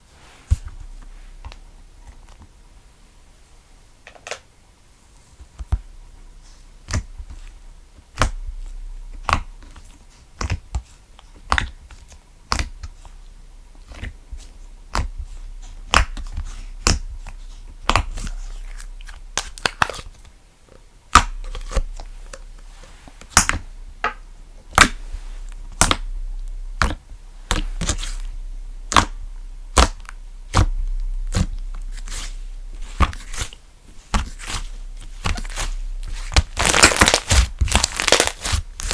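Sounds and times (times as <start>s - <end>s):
low hum: 0.0s - 38.9s
slime popping and snapping: 23.2s - 23.6s, 24.7s - 25.0s, 25.7s - 26.1s, 28.9s - 32.3s, 32.9s - 38.9s.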